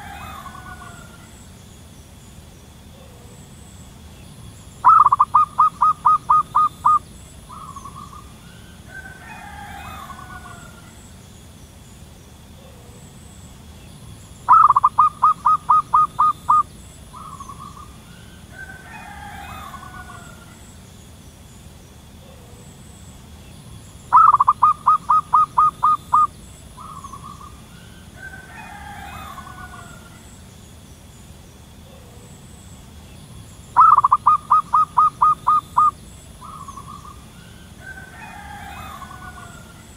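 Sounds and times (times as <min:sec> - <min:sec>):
dove cooing: 0:00.0 - 0:01.5, 0:04.8 - 0:11.1, 0:14.5 - 0:20.7, 0:24.1 - 0:30.3, 0:33.8 - 0:39.9
warbling bird call: 0:00.0 - 0:01.7, 0:04.7 - 0:11.2, 0:14.4 - 0:21.0, 0:24.0 - 0:30.5, 0:33.6 - 0:39.9.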